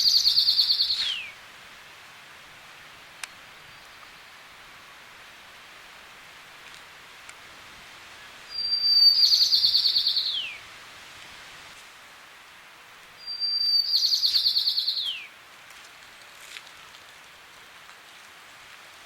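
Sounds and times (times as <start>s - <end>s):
sparrow singing: 0.0s - 1.4s, 8.5s - 10.6s, 13.2s - 15.3s
background hiss: 0.0s - 19.0s.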